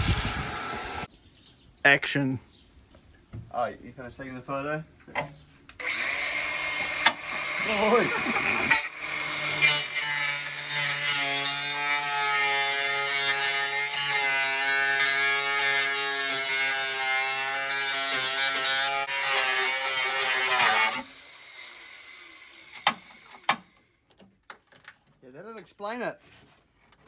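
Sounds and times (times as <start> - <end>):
electric power tool buzzing: 0.0 - 1.1, 5.7 - 23.9.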